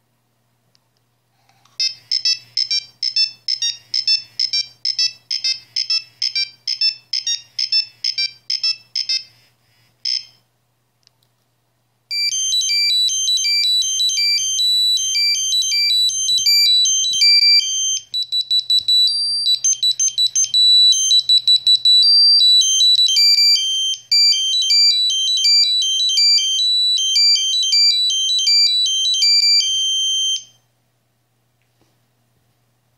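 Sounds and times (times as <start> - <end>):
rapid high phone beeping: 1.8 - 9.3, 10.0 - 10.4, 12.1 - 30.5
monophonic ringtone melody: 12.1 - 30.4.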